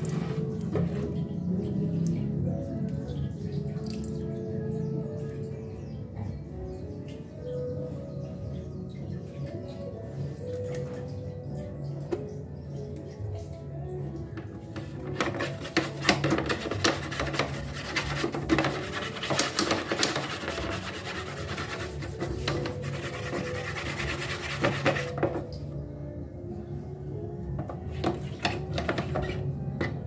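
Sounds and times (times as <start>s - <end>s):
scrubbing a bird cage: 0.0s - 1.2s, 14.6s - 25.5s, 27.8s - 29.9s.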